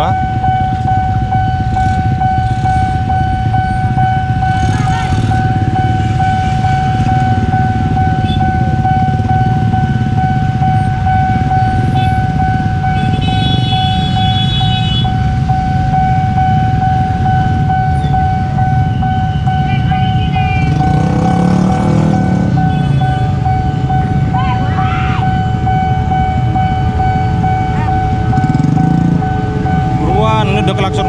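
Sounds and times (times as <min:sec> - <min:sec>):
level crossing alarm pulsing: 0:00.0 - 0:31.0
motorbikes and cars idling rumble: 0:00.0 - 0:31.0
horn blowing: 0:11.7 - 0:15.3.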